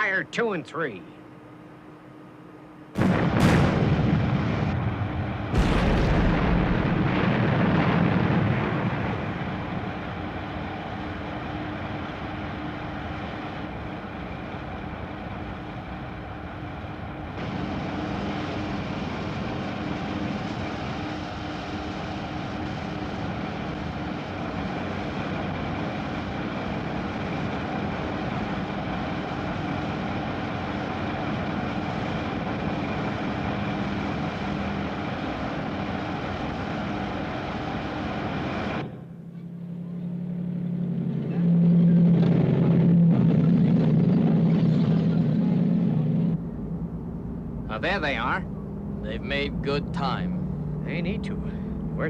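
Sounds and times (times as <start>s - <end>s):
heavy machinery engine drone: 0.0s - 52.0s
rock blasting explosion: 3.0s - 10.0s.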